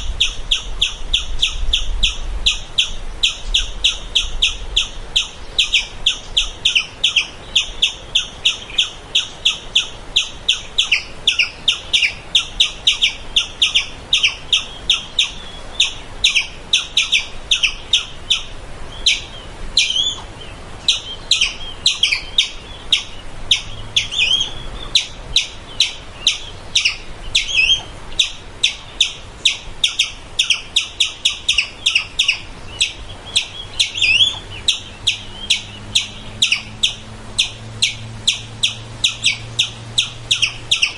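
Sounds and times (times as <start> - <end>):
squirrel chirping alarm calls: 0.0 - 40.9.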